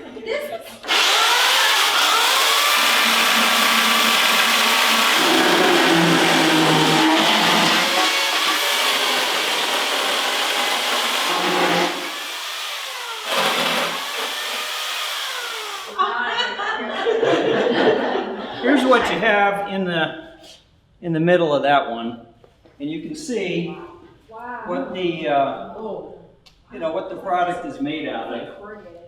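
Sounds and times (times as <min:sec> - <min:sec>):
chainsaw cutting board: 0:00.8 - 0:16.0.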